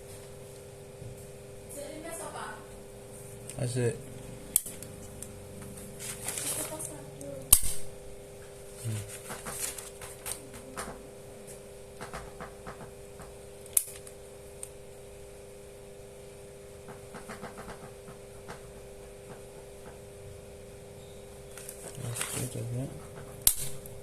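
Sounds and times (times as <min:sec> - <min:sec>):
steady low hum: 0:00.0 - 0:24.0
sharp plastic snap: 0:07.5 - 0:07.9, 0:23.4 - 0:23.9.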